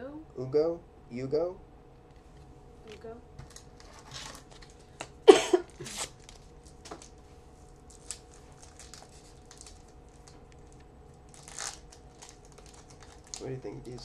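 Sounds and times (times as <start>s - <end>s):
wrapper crinkling: 5.7s - 14.0s
wrapper ripping: 5.8s - 7.1s, 7.9s - 13.6s.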